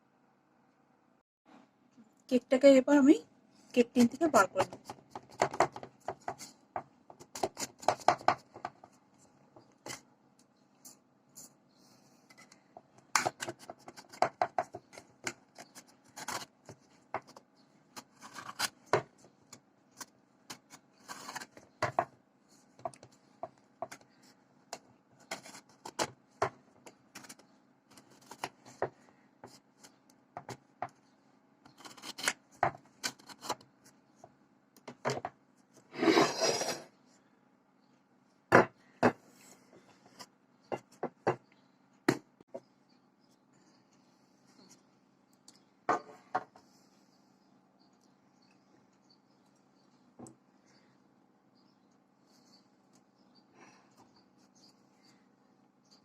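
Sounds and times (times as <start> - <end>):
cake scraping against metal tin: 35.9 - 36.9.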